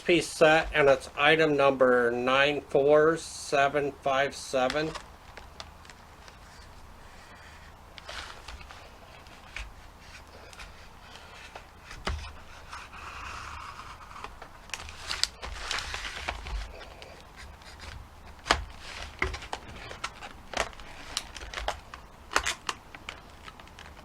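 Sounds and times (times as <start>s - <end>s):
knife cutting hard plastic: 8.0s - 22.8s.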